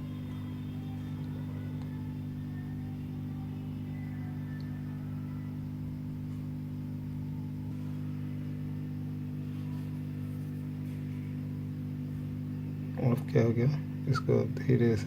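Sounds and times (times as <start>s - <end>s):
hot-air station humming: 0.0s - 15.0s.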